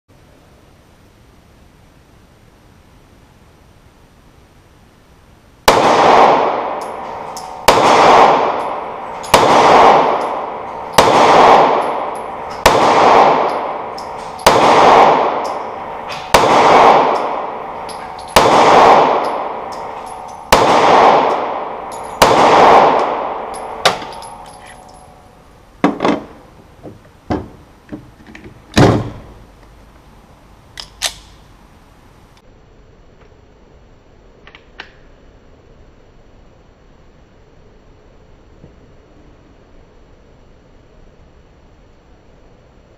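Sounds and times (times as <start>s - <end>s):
pistol shots ringing: 5.6s - 25.4s.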